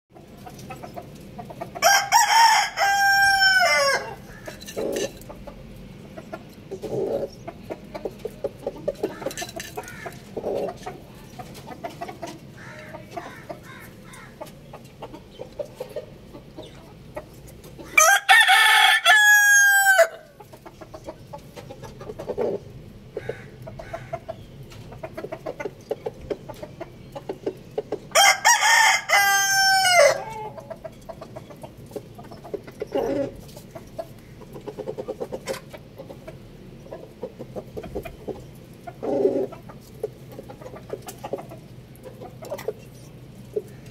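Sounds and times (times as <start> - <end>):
chickens clucking: 0.1 - 43.9
roosters crowing: 1.6 - 5.1, 9.0 - 10.7, 12.5 - 14.4, 17.8 - 20.4, 28.1 - 30.7.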